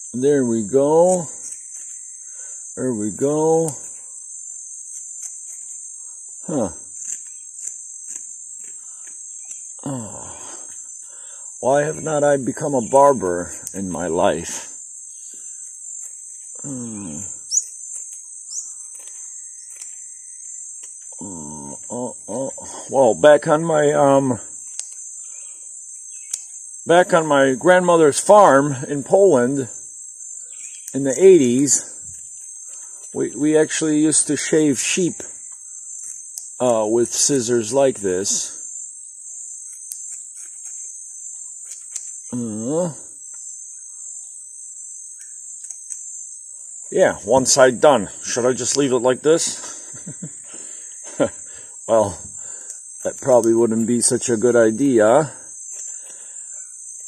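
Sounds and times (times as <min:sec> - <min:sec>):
jungle insects droning: 0:00.0 - 0:57.0
man humming: 0:06.4 - 0:06.9, 0:09.8 - 0:10.7, 0:16.6 - 0:17.6, 0:21.1 - 0:24.4, 0:42.3 - 0:43.2
scissors snipping: 0:06.9 - 0:09.7, 0:17.6 - 0:21.2, 0:24.6 - 0:25.0.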